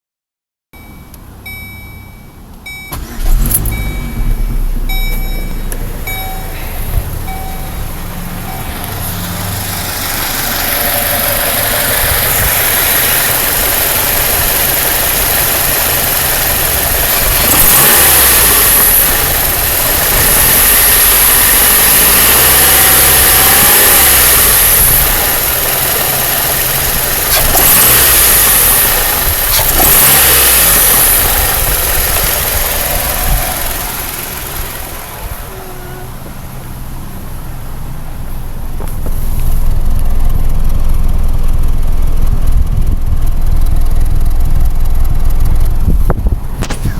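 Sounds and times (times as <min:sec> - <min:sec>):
engine ticking: 0:00.8 - 0:46.9
car engine revving: 0:02.7 - 0:39.4.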